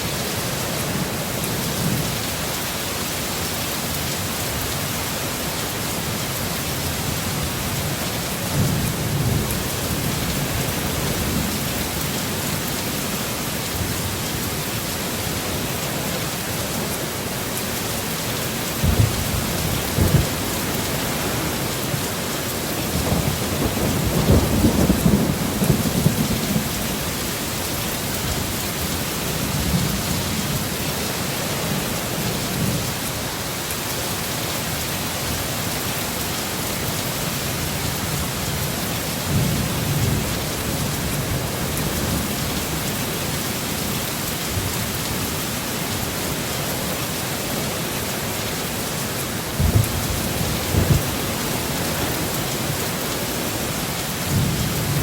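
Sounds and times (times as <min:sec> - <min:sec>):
heavy steady rain: 0:00.0 - 0:55.0
thunder rumbling: 0:18.8 - 0:21.8, 0:22.8 - 0:27.2, 0:49.5 - 0:52.9.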